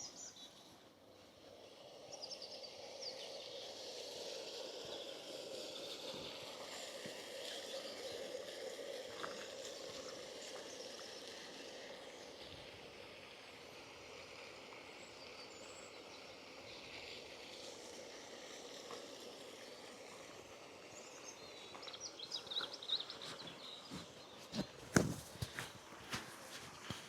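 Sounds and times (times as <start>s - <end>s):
faint birdsong: 0.0s - 27.0s.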